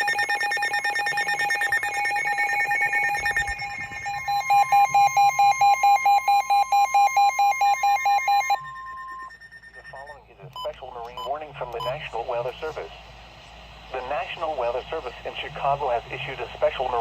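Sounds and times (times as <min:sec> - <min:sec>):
rapid buzzing warble: 0:00.0 - 0:10.4
radio pulsing alarm beep: 0:00.0 - 0:17.0
steady weather alert tone: 0:00.0 - 0:17.0.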